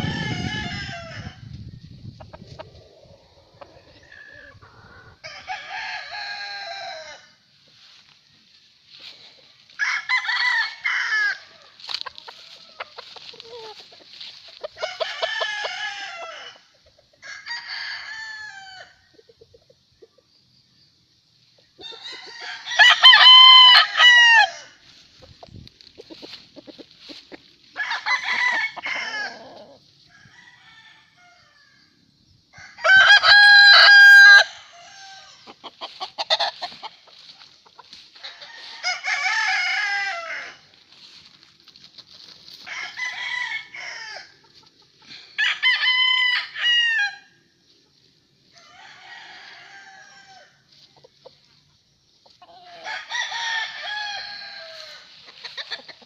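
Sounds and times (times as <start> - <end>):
roosters crowing: 0.0 - 1.5, 2.6 - 8.0, 9.7 - 19.1, 21.8 - 25.2, 27.0 - 41.2, 42.5 - 47.4, 48.5 - 50.8, 52.4 - 56.0.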